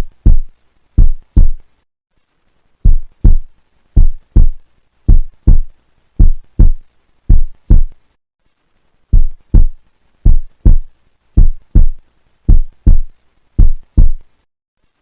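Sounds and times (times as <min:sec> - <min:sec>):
heartbeat thumps: 0:00.0 - 0:01.6, 0:02.8 - 0:08.0, 0:09.1 - 0:14.2.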